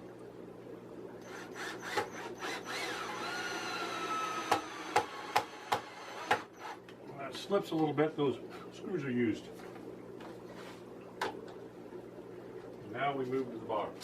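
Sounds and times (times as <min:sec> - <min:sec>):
drill motor whine: 0:01.2 - 0:06.8.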